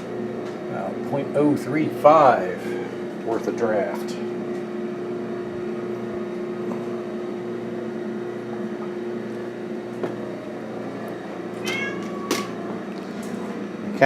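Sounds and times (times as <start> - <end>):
boiler fan hum: 0.0 - 14.0
cat meowing: 11.6 - 12.5.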